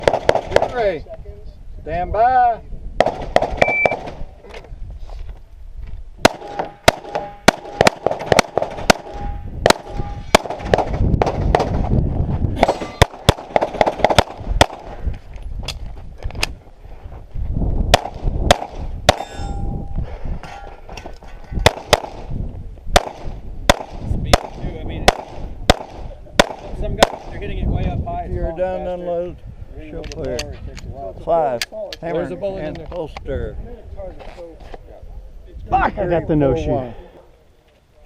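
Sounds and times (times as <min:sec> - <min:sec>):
pistol shots: 0:00.0 - 0:00.7, 0:03.0 - 0:04.2, 0:06.2 - 0:11.8, 0:12.6 - 0:14.9, 0:17.9 - 0:19.3, 0:21.6 - 0:22.3, 0:22.9 - 0:27.3
steel target clanging: 0:12.6 - 0:13.2, 0:19.1 - 0:21.0.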